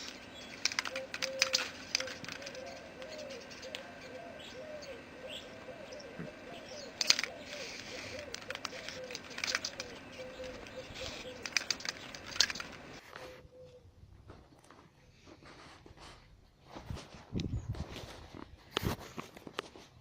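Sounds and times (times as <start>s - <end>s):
high bird chirps: 0.0s - 13.0s
low repeated bird call: 0.0s - 14.0s.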